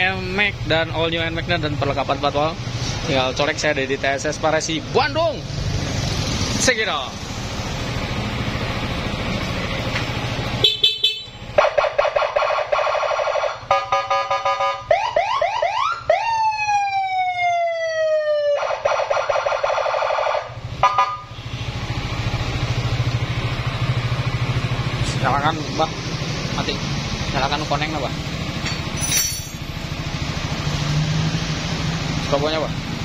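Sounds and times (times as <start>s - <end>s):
scooter engine idling: 20.5s - 29.0s.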